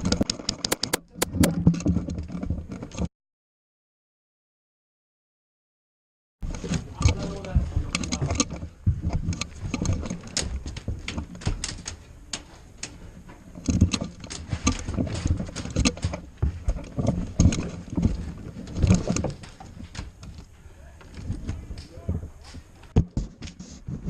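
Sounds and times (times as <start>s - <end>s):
gear clicks and knocks: 0.0s - 3.1s, 6.4s - 24.0s.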